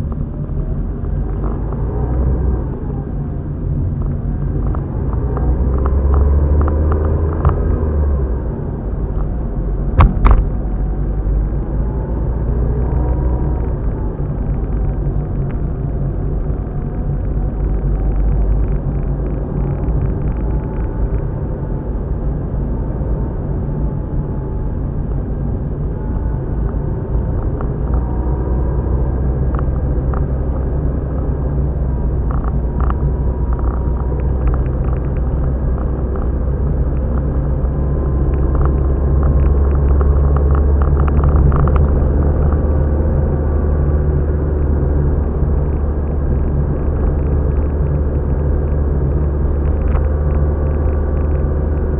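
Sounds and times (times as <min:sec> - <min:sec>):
car driving rumble: 0:00.0 - 0:51.9
sharp knock: 0:10.0 - 0:10.6.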